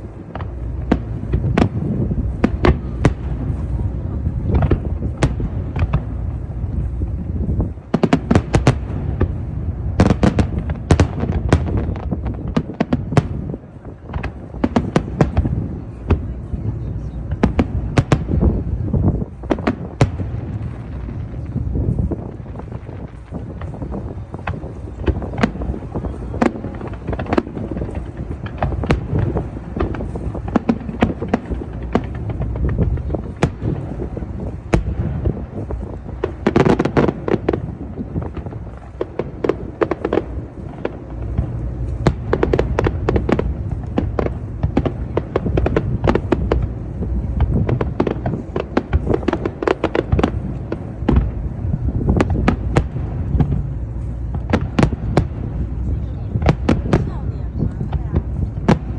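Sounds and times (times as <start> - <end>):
low rumble: 0.0 - 58.9
firework shell bursts and cracks: 17.4 - 58.9.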